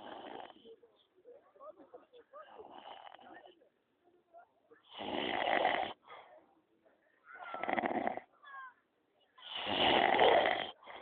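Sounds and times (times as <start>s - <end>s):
man snoring: 9.5s - 10.8s.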